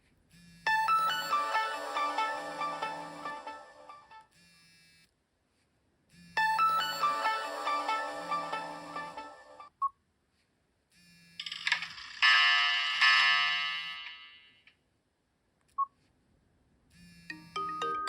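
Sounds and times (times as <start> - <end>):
phone chiming melody: 0.7 - 4.2, 6.4 - 9.6, 17.3 - 18.0
bright shimmering chime: 0.8 - 4.2.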